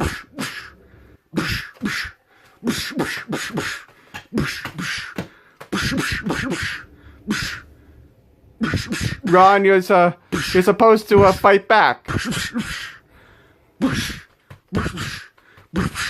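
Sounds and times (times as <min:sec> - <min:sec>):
person grunting: 0:00.0 - 0:07.7, 0:08.6 - 0:09.5, 0:12.0 - 0:13.0, 0:13.8 - 0:16.0.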